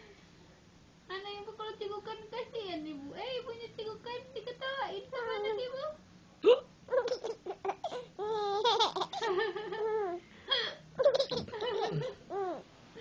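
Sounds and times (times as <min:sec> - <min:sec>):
woman hiccuping: 0:06.4 - 0:07.4, 0:11.0 - 0:12.6
baby laughing: 0:06.9 - 0:10.2, 0:11.0 - 0:12.6.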